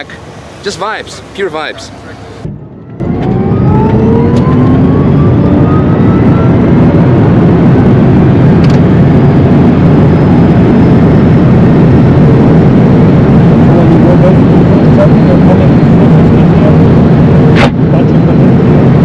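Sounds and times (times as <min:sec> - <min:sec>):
road and wind roar: 0:00.0 - 0:19.0
electric motor whine: 0:03.0 - 0:07.4.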